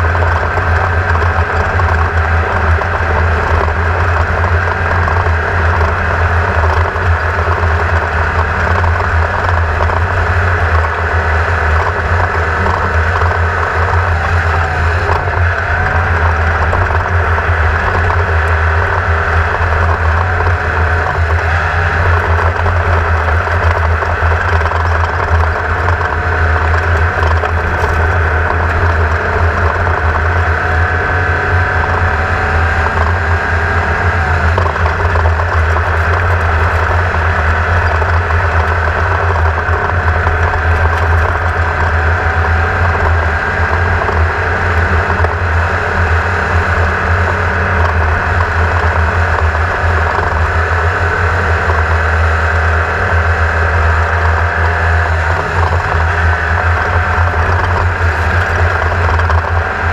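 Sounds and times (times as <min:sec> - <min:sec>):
race buggy engine drone: 0:00.0 - 0:59.9
road and chassis noise: 0:00.0 - 0:59.9.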